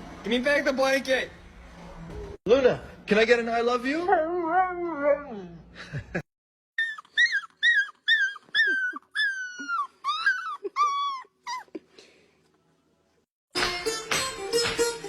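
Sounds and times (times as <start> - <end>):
dog whining: 4.0 - 5.7, 6.8 - 11.9
music: 13.5 - 15.0.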